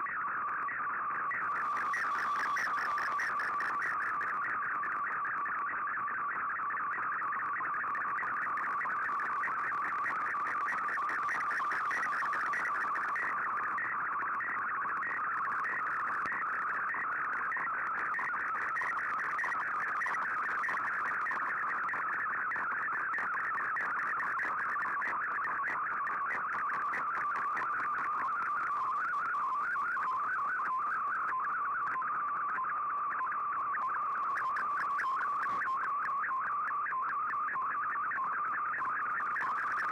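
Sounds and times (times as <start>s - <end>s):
warbling digital radio signal: 1.0s - 5.7s, 7.3s - 13.8s.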